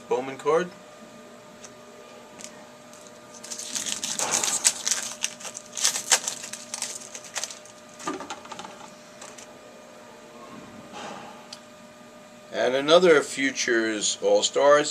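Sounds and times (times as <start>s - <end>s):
trading cards crinkling: 2.4s - 9.5s.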